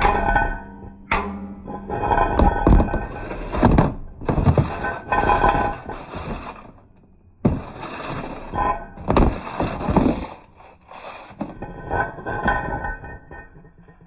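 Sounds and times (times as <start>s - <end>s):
heavy ringing metallic thunks: 0.0s - 5.8s.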